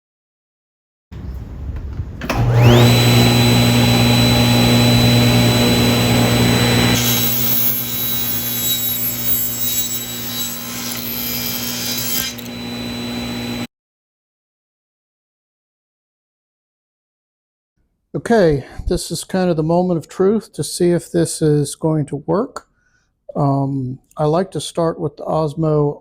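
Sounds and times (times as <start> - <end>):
power saw motor whine: 2.2 - 13.7
saw cutting wood: 2.3 - 13.7.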